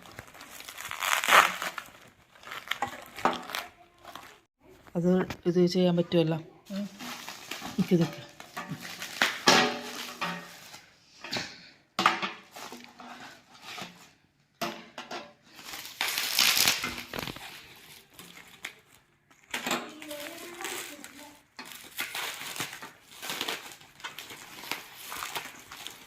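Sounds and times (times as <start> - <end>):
packaging crinkling and tearing: 0.0 - 4.9, 6.9 - 10.9, 15.5 - 26.0.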